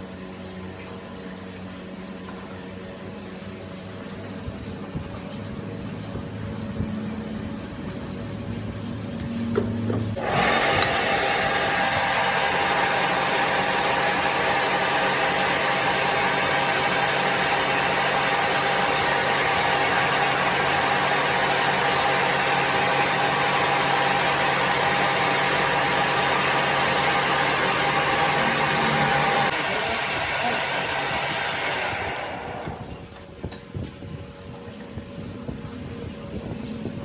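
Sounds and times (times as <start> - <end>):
steady hum: 6.3 - 33.2
workshop machine hissing: 10.1 - 32.9.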